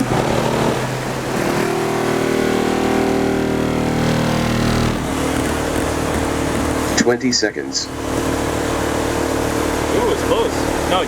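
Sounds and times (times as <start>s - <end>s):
subwoofers playing loud bass notes: 0.0s - 8.0s.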